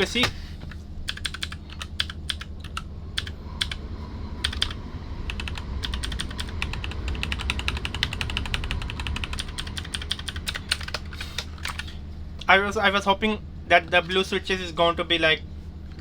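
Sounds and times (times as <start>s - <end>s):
mechanical keyboard typing: 1.1s - 3.8s, 4.4s - 11.9s.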